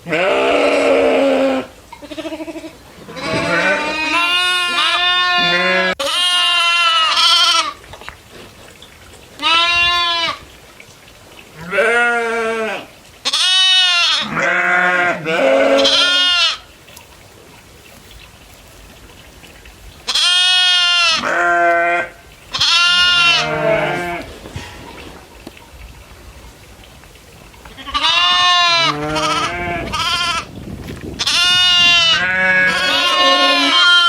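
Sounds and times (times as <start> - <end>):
goats bleating: 0.0 - 7.8, 9.4 - 10.4, 11.6 - 16.7, 20.1 - 24.4, 27.7 - 30.5, 31.2 - 34.0.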